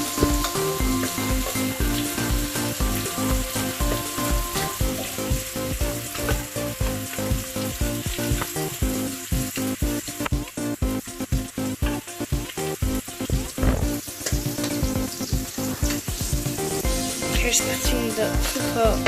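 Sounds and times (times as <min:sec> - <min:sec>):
food sizzling in a pan: 0:00.0 - 0:19.0
music with a steady beat: 0:00.0 - 0:19.0.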